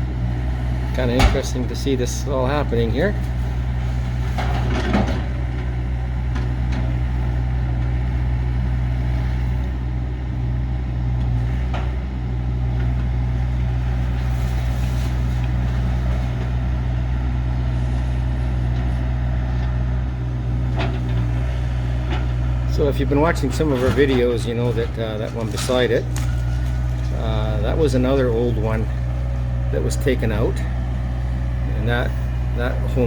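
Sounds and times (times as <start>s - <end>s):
excavator diesel engine running: 0.0s - 33.0s.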